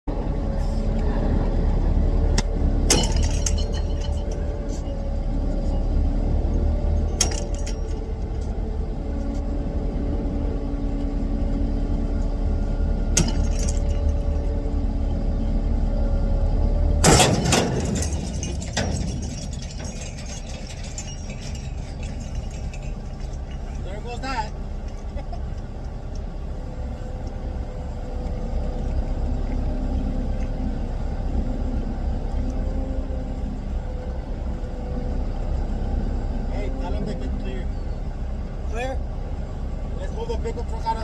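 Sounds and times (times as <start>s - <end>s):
diesel engine rumbling: 0.0s - 41.0s
metallic clanks: 2.8s - 5.0s, 7.0s - 8.6s, 13.1s - 14.5s, 17.0s - 25.1s.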